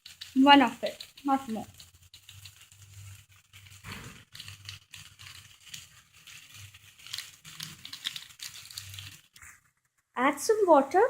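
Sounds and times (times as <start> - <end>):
sachet crinkling and tearing: 1.0 - 9.5.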